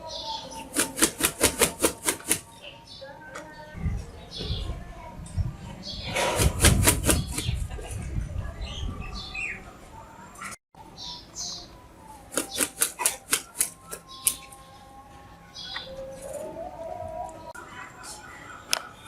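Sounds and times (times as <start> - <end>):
bird flapping wings: 0.7 - 2.5, 6.3 - 7.6, 12.3 - 14.4.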